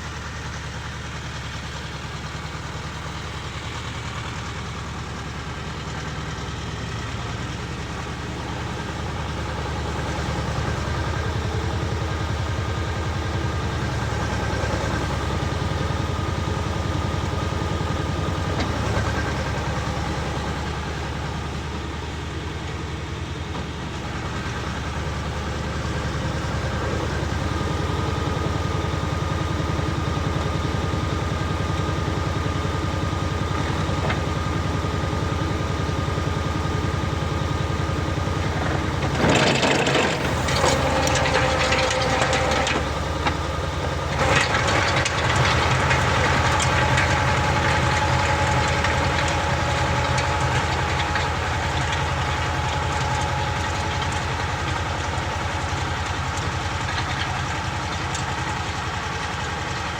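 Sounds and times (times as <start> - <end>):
tiller engine running: 0.0 - 59.9
rattling clatter: 37.3 - 59.9.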